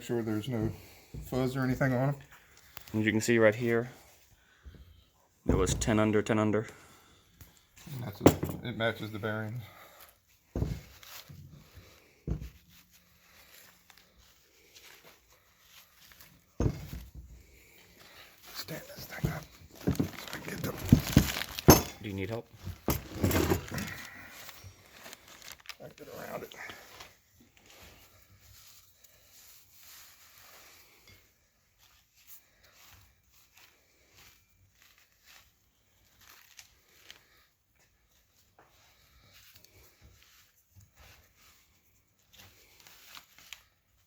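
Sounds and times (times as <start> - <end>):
soft clicks of parts handled: 2.5 - 3.0
dull thumps: 8.2 - 8.8, 10.5 - 11.0, 16.6 - 17.4.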